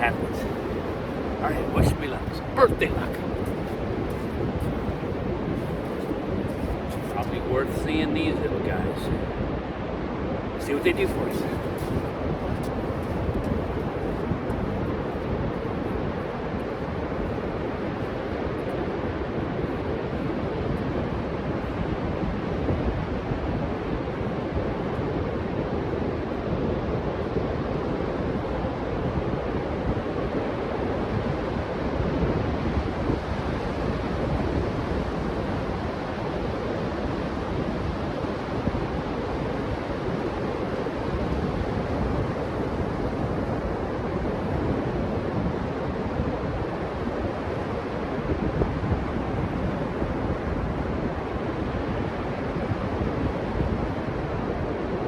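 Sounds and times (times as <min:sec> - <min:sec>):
wind on microphone: 0:00.0 - 0:07.8, 0:08.4 - 0:55.0
ocean surf breaking on beach: 0:00.0 - 0:09.8.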